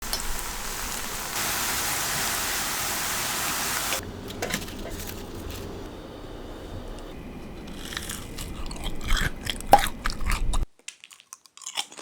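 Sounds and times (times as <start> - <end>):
oil crackles and ticks: 0.0 - 1.4
food deep-frying in hot oil: 0.0 - 4.0.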